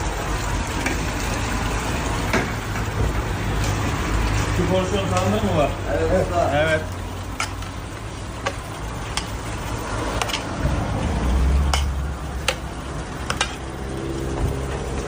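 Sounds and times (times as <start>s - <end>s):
sharp clicks and knocks: 11.7s - 13.6s.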